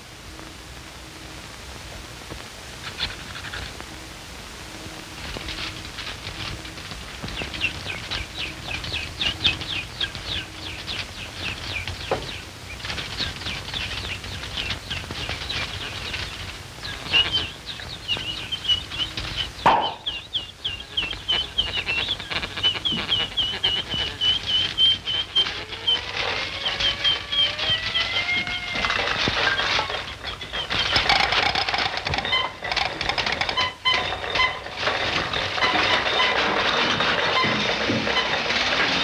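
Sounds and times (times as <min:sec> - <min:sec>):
bird twittering: 0:05.4 - 0:31.6.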